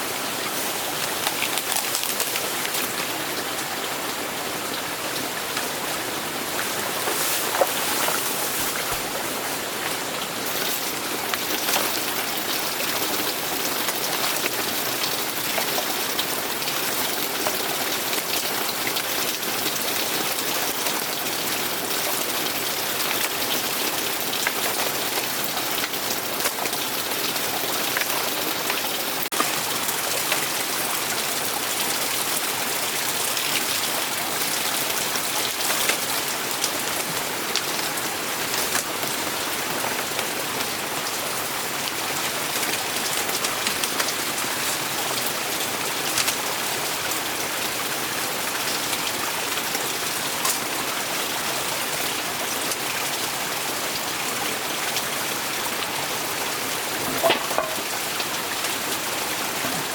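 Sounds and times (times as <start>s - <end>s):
steady rain hiss: 0.0s - 59.9s
raindrop ticks: 46.0s - 46.5s.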